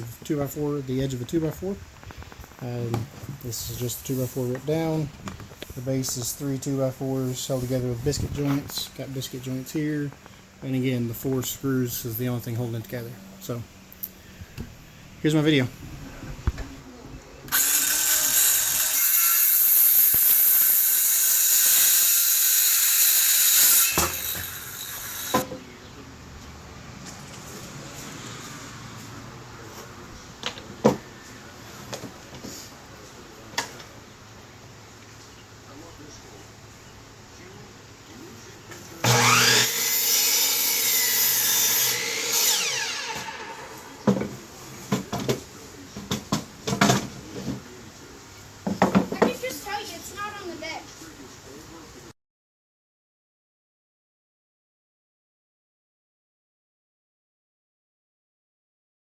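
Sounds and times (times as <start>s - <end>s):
loud steady hiss: 0.0s - 26.4s
power woodworking tool whining: 17.5s - 25.5s, 39.0s - 44.2s.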